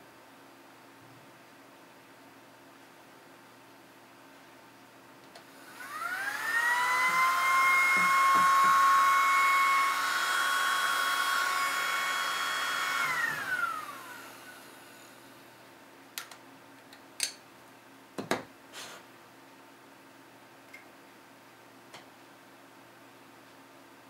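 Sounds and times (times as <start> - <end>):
mini vacuum cleaner motor whine: 5.4 - 15.5.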